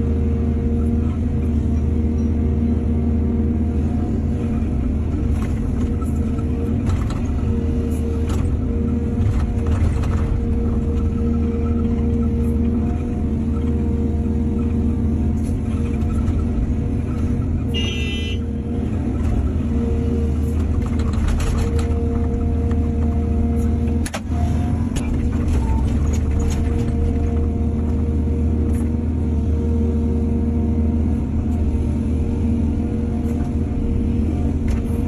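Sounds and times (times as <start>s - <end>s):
excavator diesel engine running: 0.0s - 35.0s.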